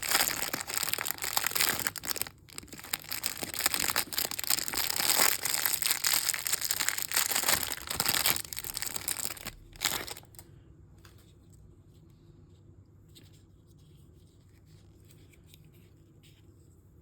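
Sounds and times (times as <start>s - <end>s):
plastic wrapping crackling: 0.0s - 10.4s.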